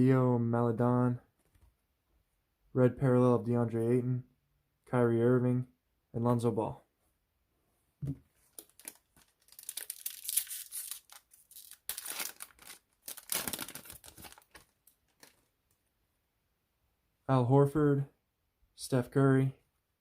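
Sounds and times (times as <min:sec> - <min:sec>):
foil wrapper tearing and crinkling: 0:08.5 - 0:15.4.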